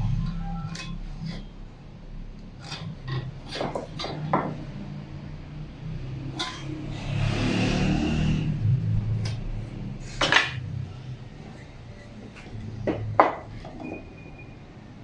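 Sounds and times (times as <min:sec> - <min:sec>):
rasping scrape on wood: 0:02.6 - 0:04.7
tools knocking on wood: 0:03.5 - 0:04.6, 0:12.8 - 0:14.0.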